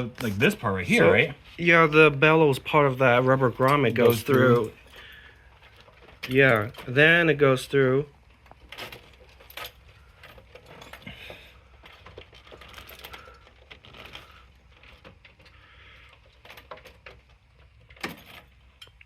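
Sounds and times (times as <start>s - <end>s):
light metallic clicks and rattles: 8.1s - 19.0s.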